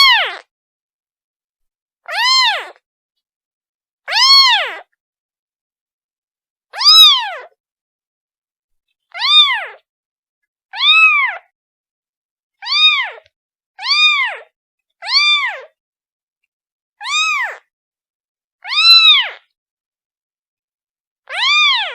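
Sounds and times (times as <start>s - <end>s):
kitten meowing: 0.0s - 0.5s, 2.1s - 2.8s, 4.1s - 4.9s, 6.8s - 7.6s, 9.1s - 9.8s, 10.8s - 11.5s, 12.6s - 15.7s, 17.0s - 17.6s, 18.6s - 19.4s, 21.3s - 21.9s.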